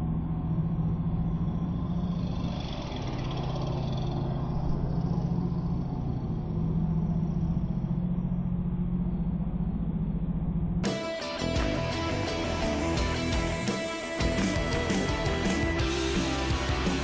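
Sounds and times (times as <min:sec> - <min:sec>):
electric bike hum: 0:00.0 - 0:17.0.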